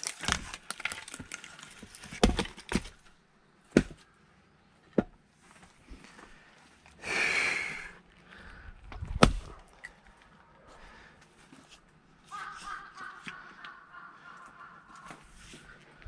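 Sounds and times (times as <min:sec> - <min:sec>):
heavy breath out: 0:06.0 - 0:08.9
axe striking log: 0:09.1 - 0:09.5.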